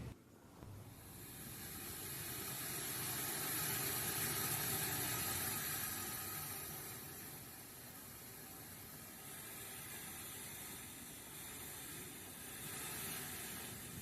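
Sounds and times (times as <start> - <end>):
steady hiss of noise: 0.0 - 14.0.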